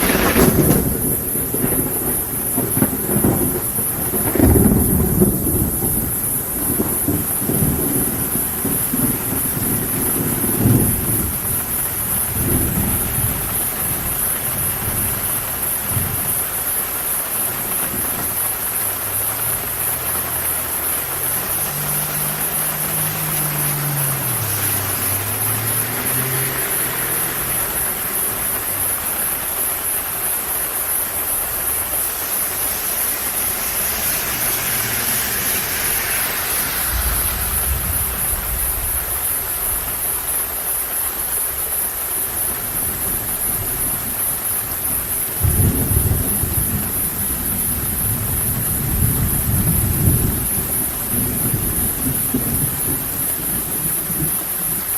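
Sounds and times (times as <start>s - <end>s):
low thunder rumble: 0.0s - 54.9s
steady rain: 0.0s - 54.9s
hiss: 8.4s - 54.9s
passing car engine hum: 19.3s - 30.1s, 32.5s - 39.2s.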